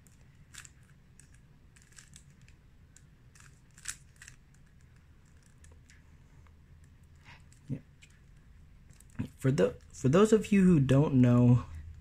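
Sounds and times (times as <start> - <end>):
puzzle cube clicking: 0.0 - 6.0.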